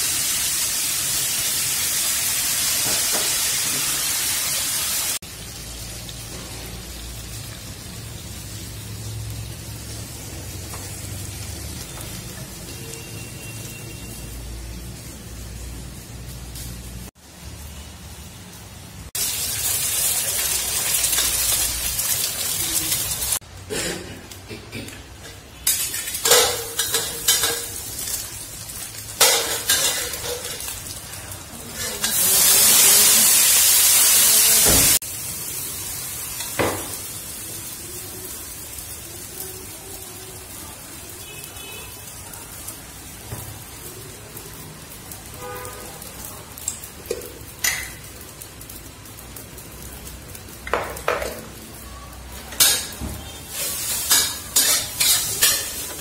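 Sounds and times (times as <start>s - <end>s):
food sizzling in hot oil: 0.0s - 56.0s
metal utensils scraping a pan: 25.2s - 28.3s, 28.9s - 31.0s, 31.6s - 32.8s, 52.2s - 56.0s.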